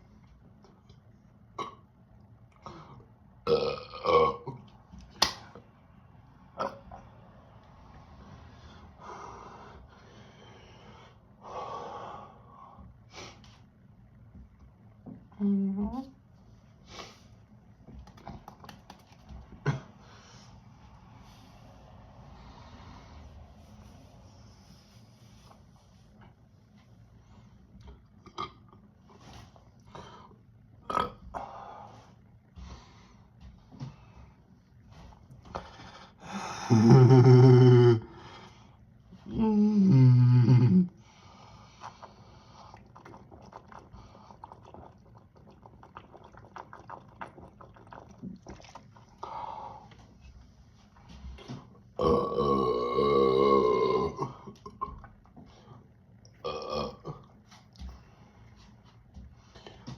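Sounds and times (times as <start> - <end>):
person burping: 1.5 - 1.9, 2.6 - 4.7, 6.6 - 7.0, 28.2 - 28.8, 30.8 - 31.3, 36.6 - 38.2, 52.0 - 55.2, 56.4 - 57.4
man breathing heavily and gasping: 35.5 - 37.0.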